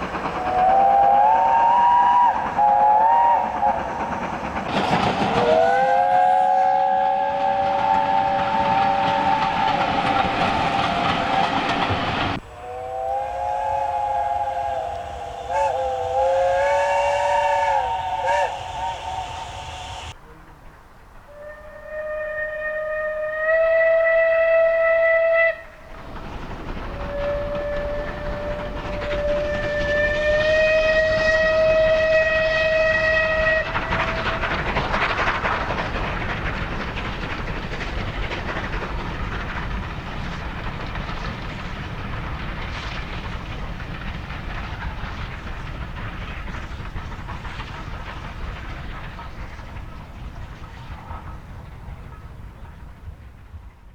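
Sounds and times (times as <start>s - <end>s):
train rushing and rail clatter: 0.0s - 53.9s
steam locomotive whistle: 0.4s - 4.0s, 5.2s - 20.2s, 21.3s - 25.9s, 26.9s - 34.5s.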